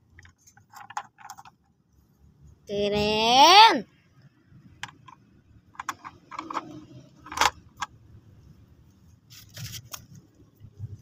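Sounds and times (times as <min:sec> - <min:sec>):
toy vehicles clicking and knocking: 0:00.0 - 0:01.8, 0:04.7 - 0:08.0.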